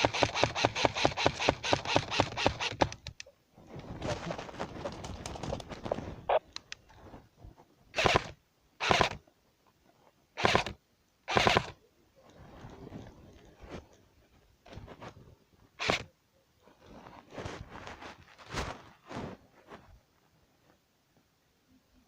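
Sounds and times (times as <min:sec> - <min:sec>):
leaves and branches crunching: 0:16.9 - 0:19.9.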